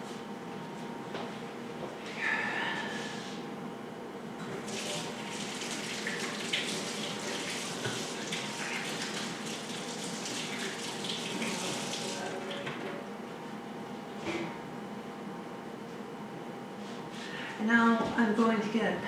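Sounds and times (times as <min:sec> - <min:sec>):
tap water splashing into sink: 0:04.7 - 0:12.8.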